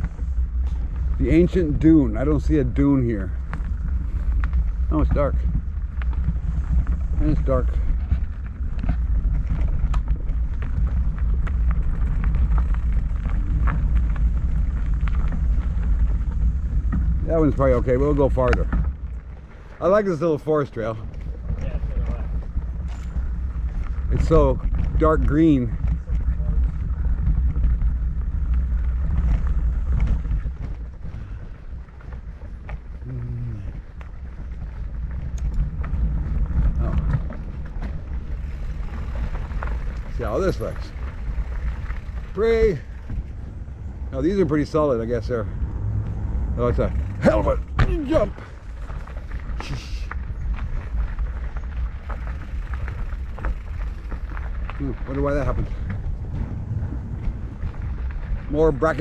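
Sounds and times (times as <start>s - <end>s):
bike clicks and knocks: 0.0s - 19.7s, 21.0s - 44.8s, 46.8s - 59.0s
bike tyre noise: 0.0s - 59.0s
wind on microphone: 21.1s - 59.0s.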